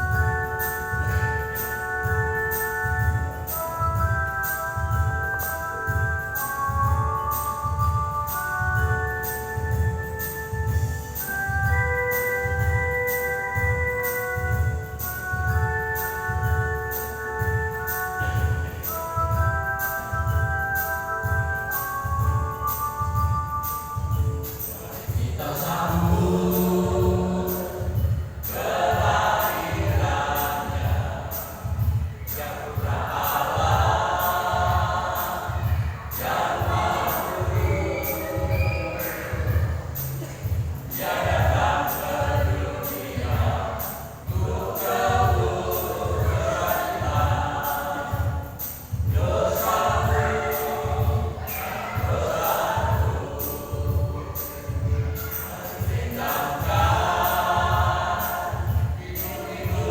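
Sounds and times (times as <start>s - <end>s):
low accompaniment beat: 0.0s - 59.9s
choir singing a hymn: 24.5s - 59.9s.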